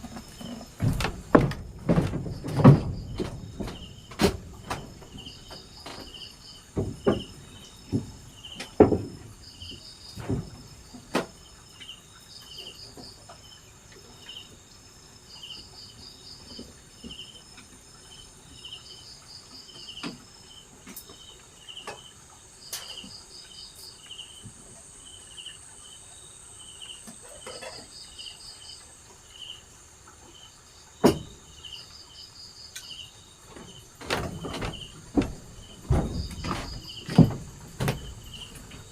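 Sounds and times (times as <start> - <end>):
insects chirping: 0.0 - 38.9
sharp knocks and taps: 33.5 - 38.9.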